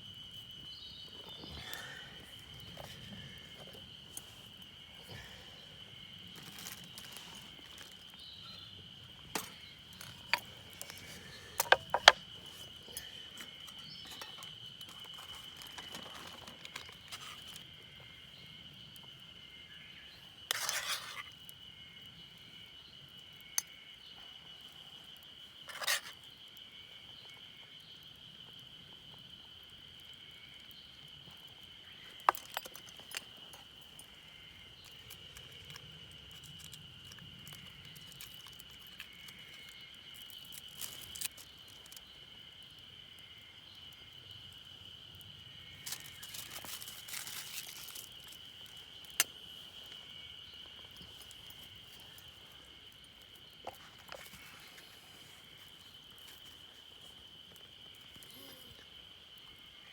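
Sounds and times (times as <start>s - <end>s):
high insect drone: 0.0s - 59.9s
sharp clicks and knocks: 11.6s - 12.2s.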